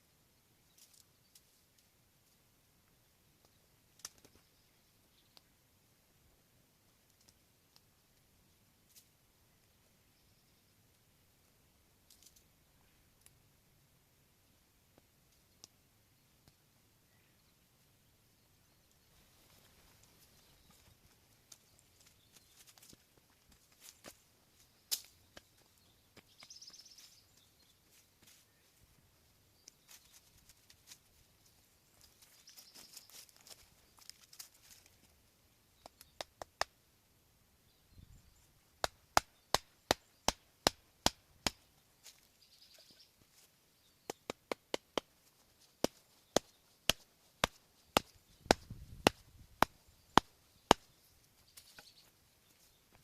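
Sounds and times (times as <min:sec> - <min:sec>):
axe chopping firewood: 0:45.8 - 0:50.9.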